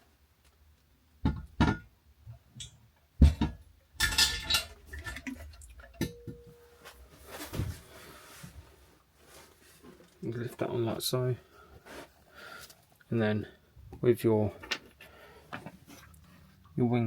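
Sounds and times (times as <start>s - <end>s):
porcelain clinks and knocks: 5.9s - 6.7s.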